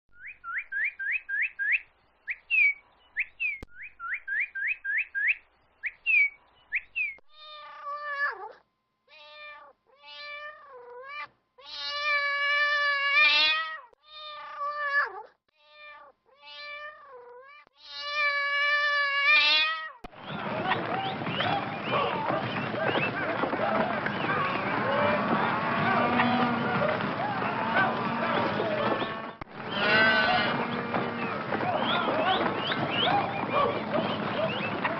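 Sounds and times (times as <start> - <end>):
bird singing whistled notes: 0.1 - 7.2
cat meowing: 7.3 - 20.0.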